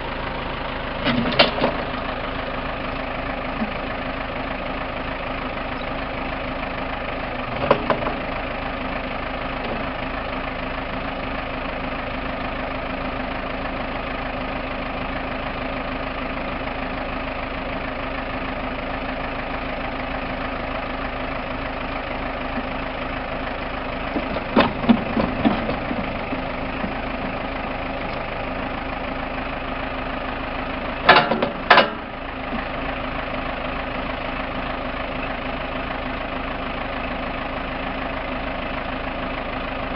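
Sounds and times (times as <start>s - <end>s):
diesel engine idling: 0.0s - 39.9s
loud metal clanks: 31.1s - 32.1s.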